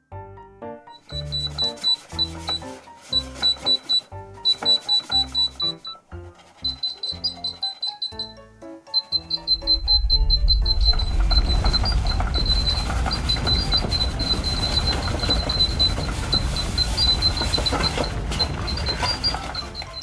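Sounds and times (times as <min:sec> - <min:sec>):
rumbling rustling noise: 0:09.4 - 0:20.0.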